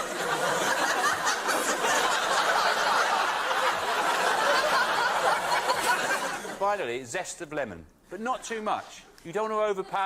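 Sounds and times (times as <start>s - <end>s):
audience laughing: 0.0s - 6.6s.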